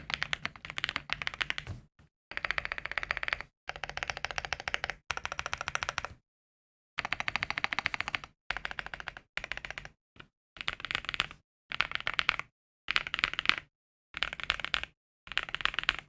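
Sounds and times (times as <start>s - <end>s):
mechanical keyboard typing: 0.0s - 1.7s, 2.3s - 6.2s, 7.0s - 10.0s, 10.6s - 16.0s.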